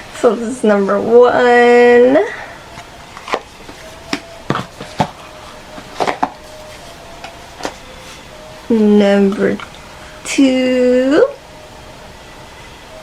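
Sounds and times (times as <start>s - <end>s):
plastic cases clicking: 5.8s - 6.4s.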